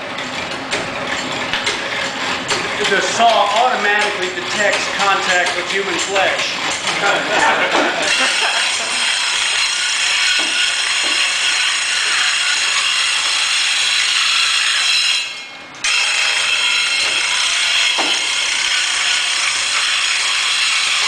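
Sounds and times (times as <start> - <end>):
ratchet drive clatter: 0.2 - 7.0.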